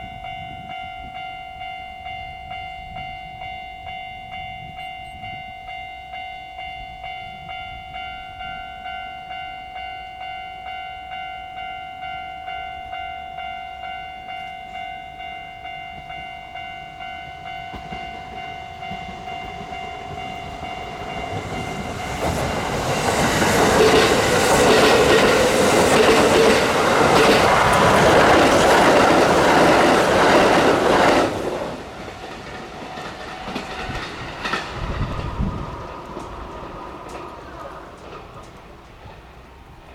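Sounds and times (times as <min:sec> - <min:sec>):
level crossing bell ringing: 0:00.0 - 0:31.1
train wheels clattering on rails: 0:15.6 - 0:39.9.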